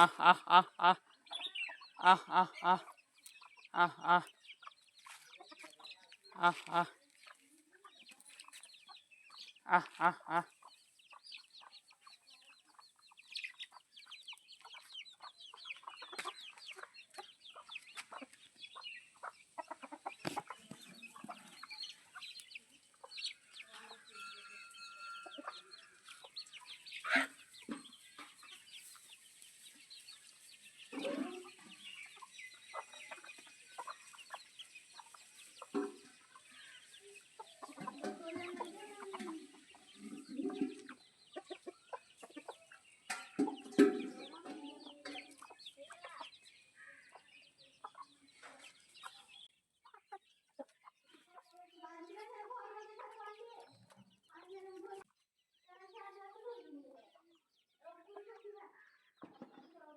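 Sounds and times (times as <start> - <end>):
chickens clucking: 0.0 - 59.9.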